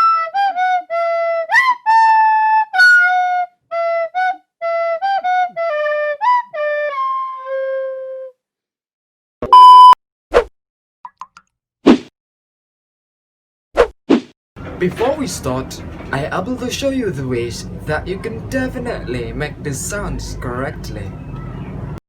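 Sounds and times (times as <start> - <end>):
flute-like melody: 0.0 - 8.4
loud steady beep: 9.5 - 10.0.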